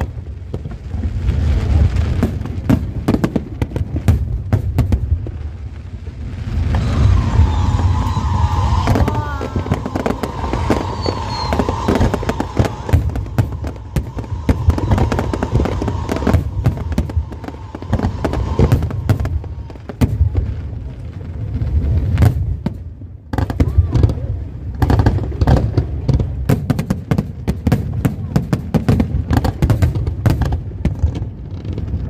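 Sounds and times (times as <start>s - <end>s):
firework bangs and crackles: 0.0s - 32.0s
high whistle: 6.7s - 19.8s.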